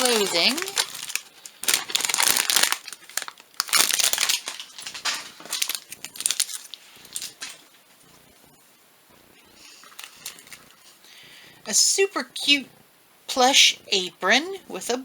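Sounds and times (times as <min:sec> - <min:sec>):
plastic packaging crinkling: 0:00.0 - 0:07.7, 0:09.7 - 0:11.0.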